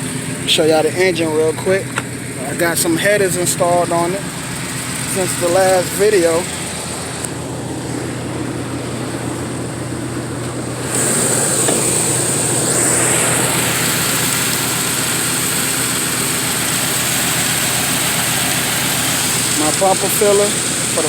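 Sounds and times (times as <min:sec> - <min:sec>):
car engine idling: 0:00.0 - 0:21.0
high hiss: 0:10.7 - 0:21.0.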